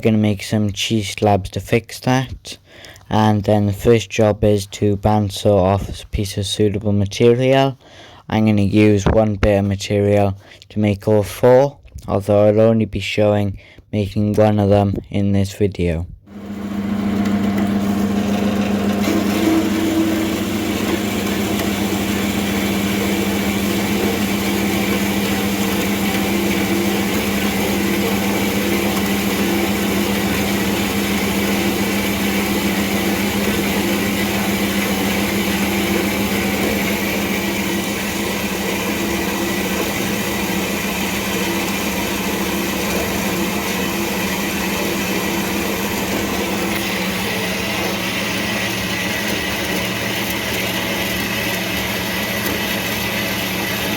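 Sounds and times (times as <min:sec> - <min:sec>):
bandsaw cutting metal: 0:16.3 - 0:53.9.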